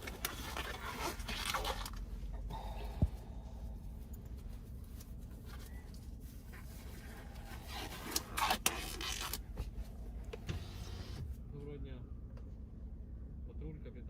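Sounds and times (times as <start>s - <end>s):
rubbing and scraping handling noise: 0.0s - 2.3s, 3.4s - 10.1s
low steady rumble: 0.0s - 14.0s.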